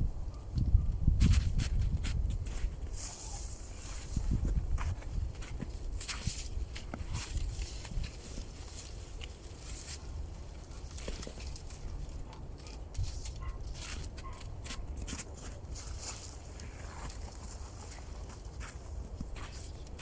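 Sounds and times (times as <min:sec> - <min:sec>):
dry reeds rustling and crackling: 0:00.6 - 0:20.0.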